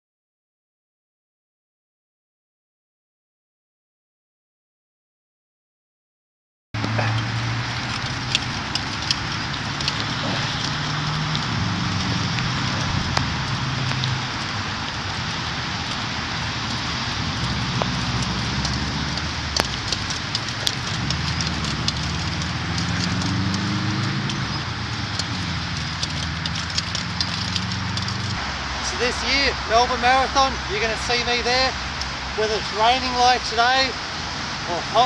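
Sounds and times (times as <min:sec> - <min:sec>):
low rumbling hum: 0:06.8 - 0:29.0
sharp ticks: 0:06.8 - 0:30.5
rain falling: 0:06.8 - 0:35.0.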